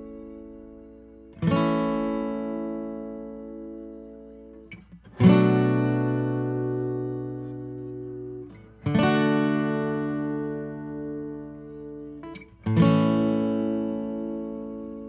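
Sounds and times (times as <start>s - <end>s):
acoustic guitar chords strummed: 0.0s - 15.0s.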